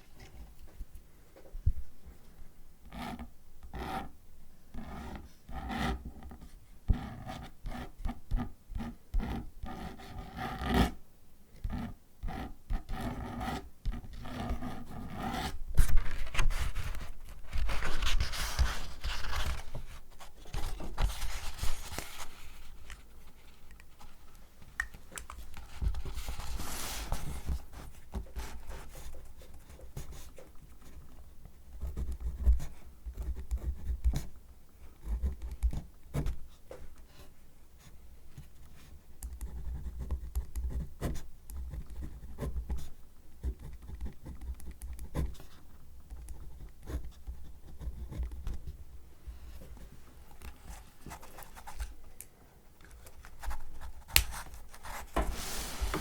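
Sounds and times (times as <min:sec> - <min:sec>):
paper scratching: 0:13.0 - 0:24.1, 0:53.3 - 0:56.0.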